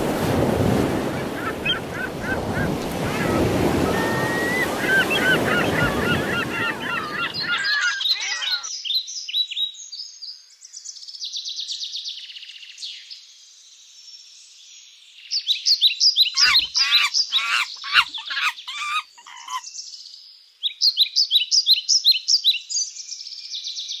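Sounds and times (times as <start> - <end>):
surf: 0.0 - 8.7
wind: 0.0 - 24.0
flock of birds calling: 0.2 - 8.7, 16.4 - 19.7
high-pitched bird trills: 3.2 - 8.7, 16.4 - 19.6.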